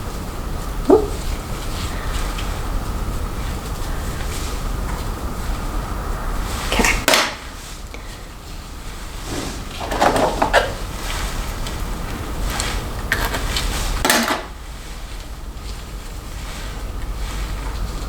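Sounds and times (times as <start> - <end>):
plastic hair rollers clattering: 12.4 - 14.6.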